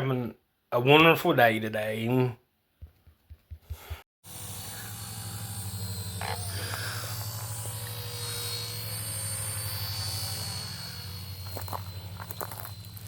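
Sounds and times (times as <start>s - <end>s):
rc helicopter motor whine: 4.2s - 13.0s.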